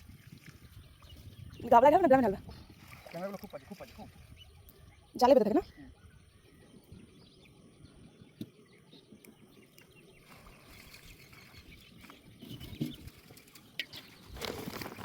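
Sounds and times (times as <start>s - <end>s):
fishing net rustling: 10.2s - 15.0s.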